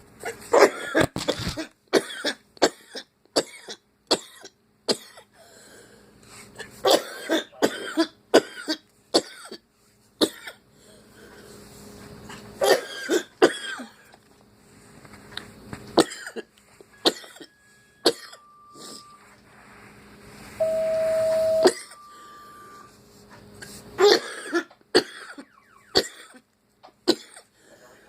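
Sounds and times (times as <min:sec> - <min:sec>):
person coughing: 0:00.5 - 0:05.3, 0:06.8 - 0:09.6, 0:10.2 - 0:10.6, 0:12.6 - 0:14.0, 0:16.0 - 0:17.5, 0:18.1 - 0:19.1, 0:21.6 - 0:22.0, 0:24.0 - 0:27.5
loud steady single-pitch tone: 0:17.0 - 0:19.4, 0:20.6 - 0:23.0.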